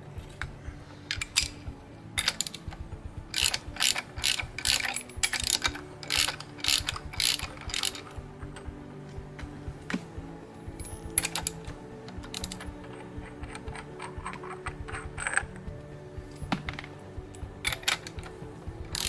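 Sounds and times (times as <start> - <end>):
socket ratchet clicking: 2.2 - 2.7, 3.3 - 8.2, 11.1 - 15.6, 17.7 - 19.0.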